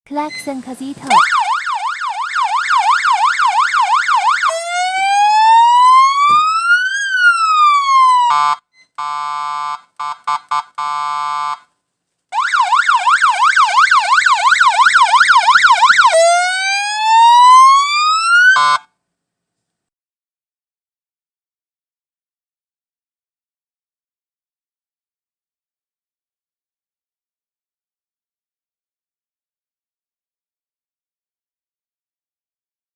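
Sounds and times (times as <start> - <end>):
electronic siren yelp and wail: 1.1 - 11.7, 12.3 - 18.9.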